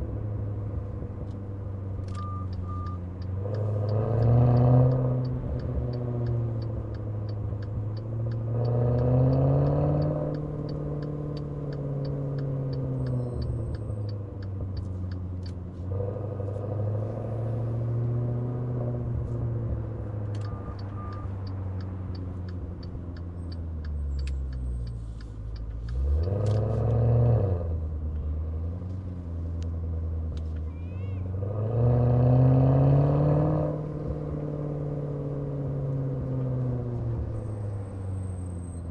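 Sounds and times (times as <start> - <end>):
car engine accelerating: 0.0 - 38.9
regular ticking: 2.1 - 15.6, 20.2 - 26.6.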